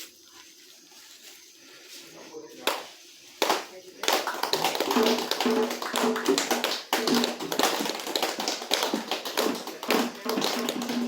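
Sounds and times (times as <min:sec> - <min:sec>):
fast tapping percussion: 0:03.4 - 0:11.0.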